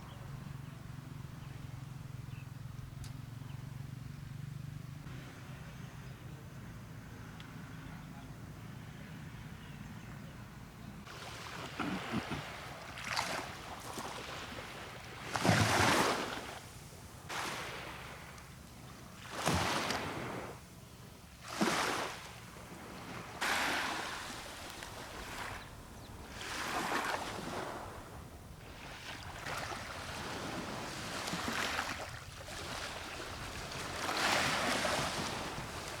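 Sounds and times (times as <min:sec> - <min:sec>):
waves splashing against boat: 0:11.1 - 0:20.6, 0:21.4 - 0:36.0.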